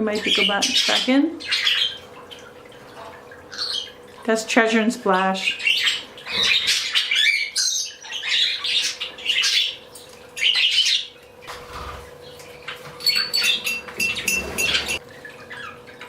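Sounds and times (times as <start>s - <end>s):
budgerigars chattering: 0.1s - 2.5s, 5.3s - 11.2s.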